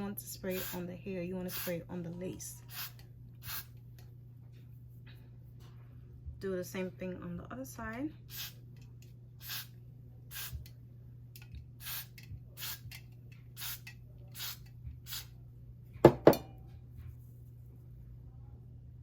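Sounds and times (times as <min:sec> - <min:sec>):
aerosol spray hissing bursts: 0:00.5 - 0:00.8, 0:01.5 - 0:01.8, 0:02.7 - 0:03.7, 0:09.4 - 0:09.7, 0:10.3 - 0:10.6, 0:11.8 - 0:12.8, 0:13.6 - 0:15.3.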